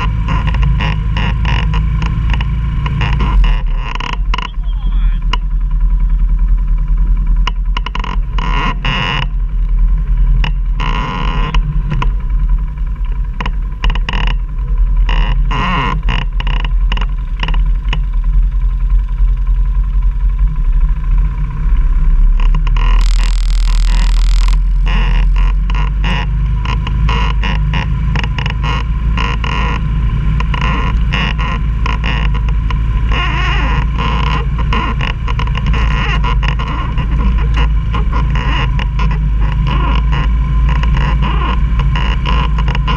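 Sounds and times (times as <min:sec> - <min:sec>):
knocks and rattles: 0:00.0 - 0:05.7
quad engine running: 0:00.0 - 0:42.9.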